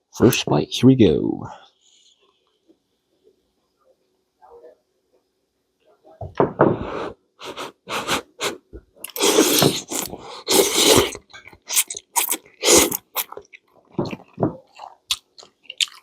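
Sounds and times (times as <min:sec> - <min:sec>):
person slurping noodles: 0:06.8 - 0:13.4
wet chewing clicks: 0:09.0 - 0:16.0.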